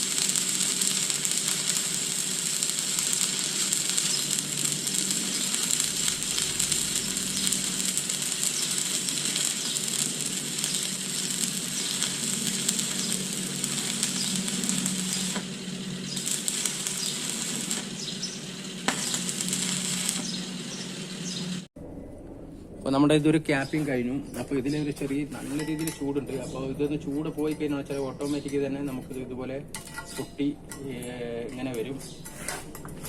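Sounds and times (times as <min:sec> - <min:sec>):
welding arc crackling: 0:00.0 - 0:21.7
low hum: 0:00.0 - 0:29.9.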